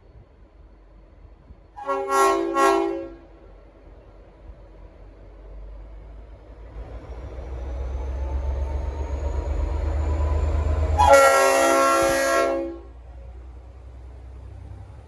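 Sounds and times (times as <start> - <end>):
diesel locomotive rumbling: 0.0 - 15.0
train horn chord blast: 1.8 - 3.3, 11.0 - 13.0.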